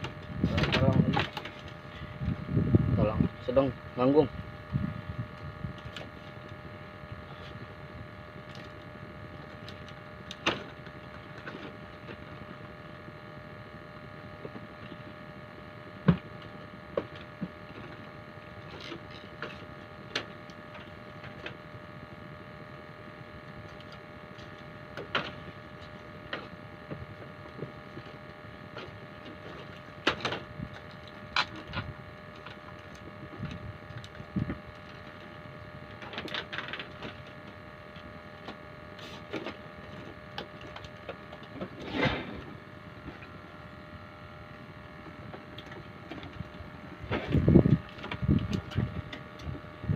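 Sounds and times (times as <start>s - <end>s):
small motor humming: 0.0s - 49.9s.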